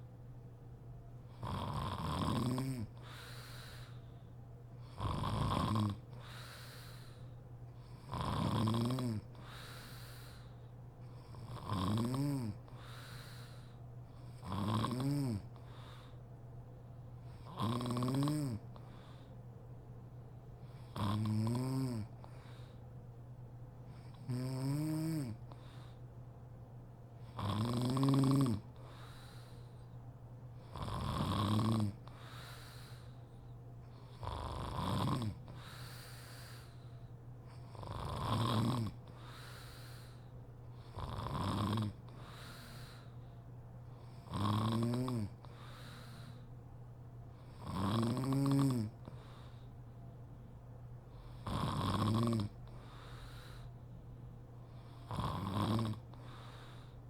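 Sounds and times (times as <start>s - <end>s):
woman snoring: 1.4s - 3.4s, 4.8s - 6.3s, 8.0s - 10.4s, 11.3s - 13.6s, 14.4s - 15.5s, 17.4s - 18.6s, 20.9s - 22.1s, 24.1s - 25.4s, 27.3s - 29.2s, 30.7s - 33.1s, 34.1s - 36.7s, 37.7s - 40.2s, 40.9s - 43.0s, 44.2s - 46.4s, 47.6s - 49.0s, 51.3s - 53.3s, 54.9s - 56.4s.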